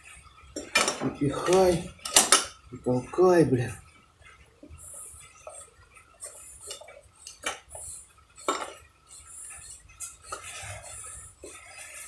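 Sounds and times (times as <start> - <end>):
metal tools clinking and scraping: 0.6 - 2.6.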